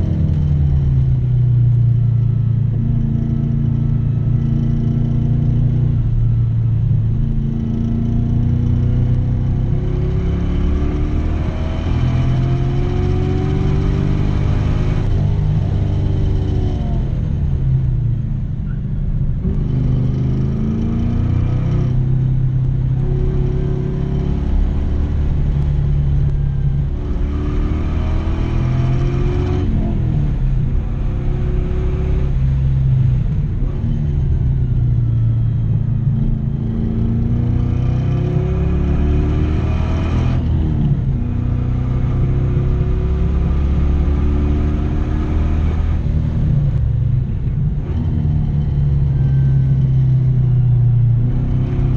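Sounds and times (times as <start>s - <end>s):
race car engine revving: 22.8s - 34.0s.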